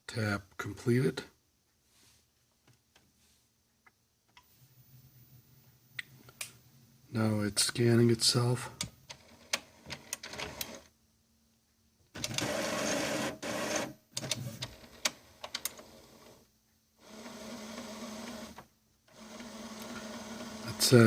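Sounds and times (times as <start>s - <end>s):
printer motor whirring: 12.2s - 16.4s, 17.0s - 21.0s
printer steady hum: 12.2s - 16.4s, 17.0s - 21.0s.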